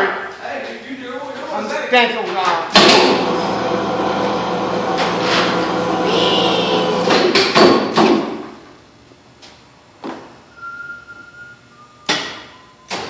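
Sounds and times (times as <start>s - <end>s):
steady hum: 2.8s - 7.4s.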